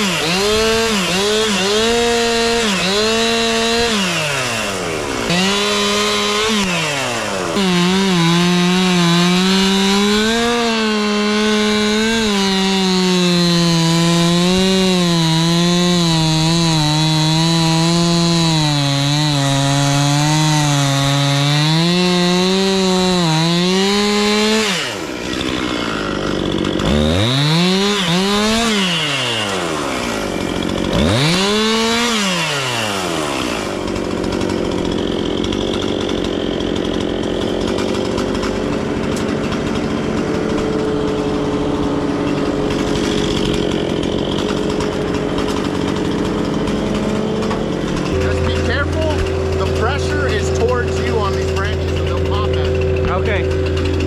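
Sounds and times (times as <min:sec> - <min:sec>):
chainsaw cutting log: 0:00.0 - 0:54.0.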